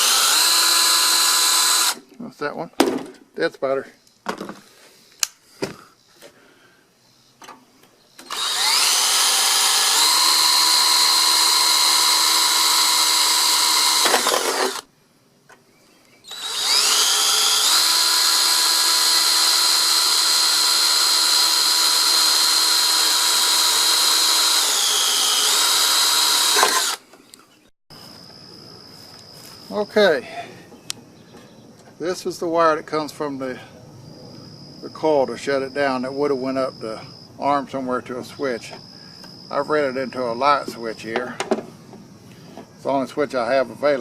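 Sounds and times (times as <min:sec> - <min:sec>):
electric drill whining: 0:00.0 - 0:02.0, 0:08.2 - 0:14.9, 0:16.3 - 0:27.0.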